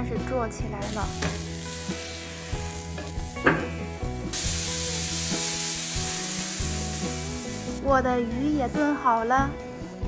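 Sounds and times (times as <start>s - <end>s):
food sizzling in oil: 0.8s - 7.9s.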